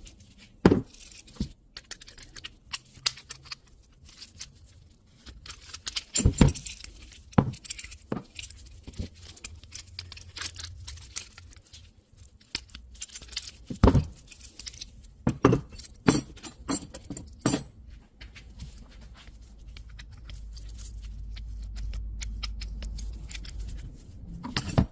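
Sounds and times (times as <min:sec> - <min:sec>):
metallic clacks of cartridges and links: 0:15.5 - 0:17.7.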